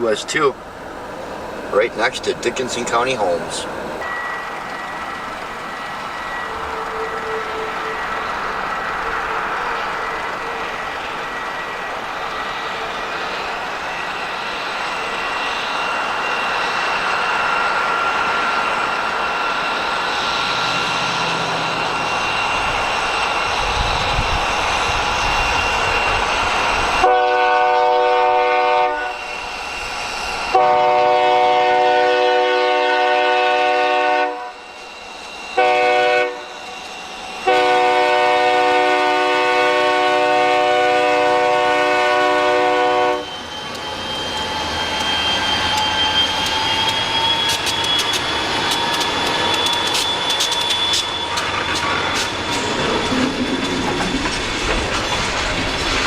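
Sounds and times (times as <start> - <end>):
train wheels clicking over rails: 0.0 - 27.4, 43.2 - 56.0
train rumble: 0.0 - 56.0
faint thin squeal: 4.0 - 27.0, 29.0 - 30.5, 34.5 - 35.7, 36.4 - 37.6, 43.1 - 54.3
locomotive air horn: 27.0 - 29.3, 30.5 - 34.7, 35.5 - 36.6, 37.4 - 43.3.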